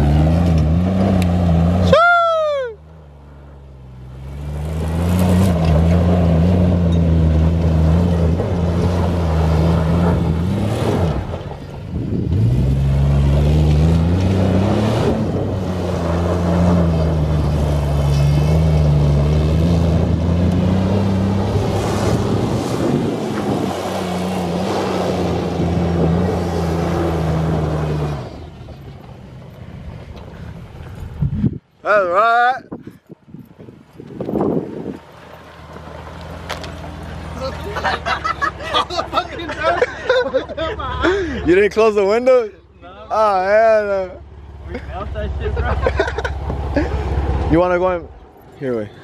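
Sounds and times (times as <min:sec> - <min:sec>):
car engine revving high: 0:12.3 - 0:28.4.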